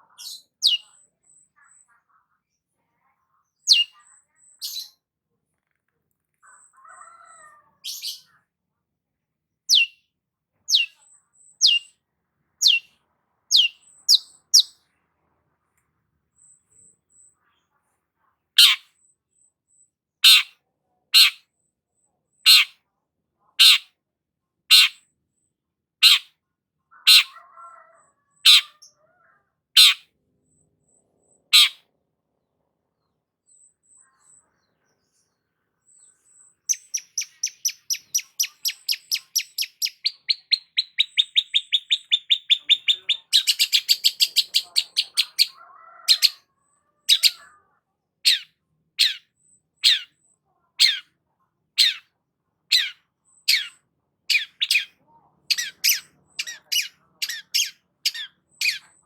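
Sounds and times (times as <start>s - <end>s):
shrike calling: 0.0s - 0.9s, 3.7s - 4.0s, 9.7s - 9.9s, 10.7s - 11.0s, 11.6s - 11.9s, 12.6s - 12.9s, 13.5s - 14.7s, 27.0s - 28.9s, 36.5s - 47.4s, 52.7s - 59.0s.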